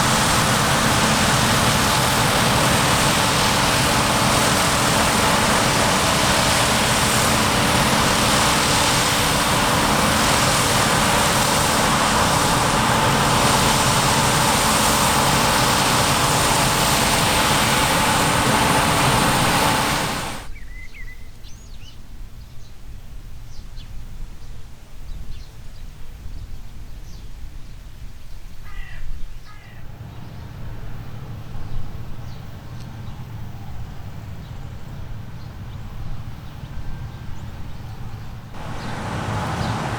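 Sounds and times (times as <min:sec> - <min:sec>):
distant engine hum: 0:00.0 - 0:20.5, 0:29.6 - 0:39.9
farm machinery engine running: 0:00.0 - 0:20.5, 0:38.6 - 0:39.9
whining tones: 0:00.0 - 0:20.5.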